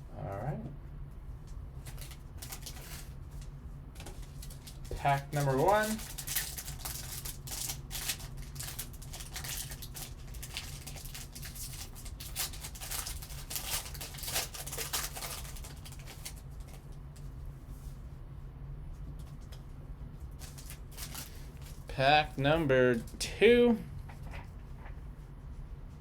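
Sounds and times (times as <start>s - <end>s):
wrapper crinkling: 1.8s - 16.9s, 20.3s - 21.9s.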